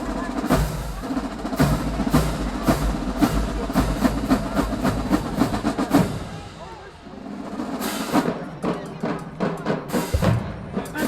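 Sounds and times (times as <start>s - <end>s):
drumline playing snare and bass drums: 0.0s - 11.0s.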